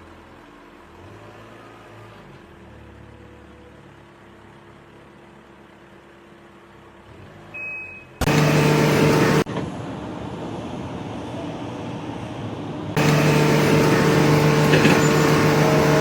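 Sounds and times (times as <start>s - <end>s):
engine running: 8.2s - 16.0s
low machinery hum: 8.2s - 16.0s.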